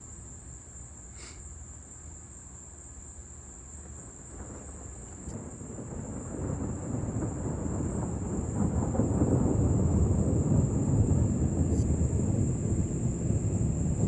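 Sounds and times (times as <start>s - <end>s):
insect chorus trilling: 0.0s - 14.0s
thunder rumbling: 3.8s - 14.0s.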